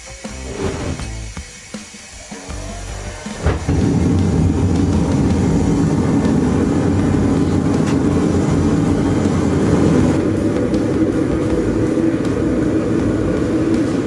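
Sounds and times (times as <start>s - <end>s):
forge low rumble: 3.3s - 14.0s.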